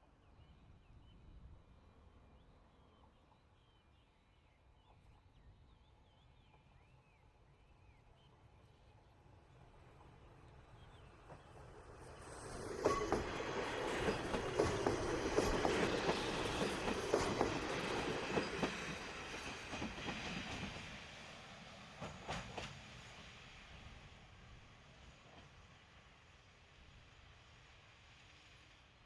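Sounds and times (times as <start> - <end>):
diesel train passing: 9.5 - 29.0
wheels clacking over rail joints: 12.4 - 20.8.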